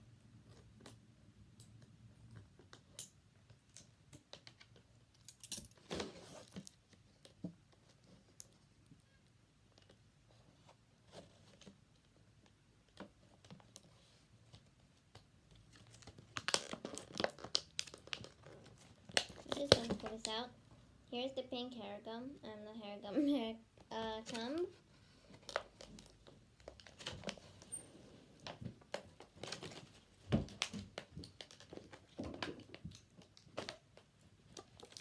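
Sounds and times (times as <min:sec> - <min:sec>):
plastic packaging clicks and rustles: 0:11.1 - 0:20.5, 0:24.3 - 0:27.8, 0:28.4 - 0:35.0
packaging crinkling and tearing: 0:15.6 - 0:20.4, 0:25.3 - 0:27.8, 0:28.4 - 0:33.8, 0:34.5 - 0:35.0.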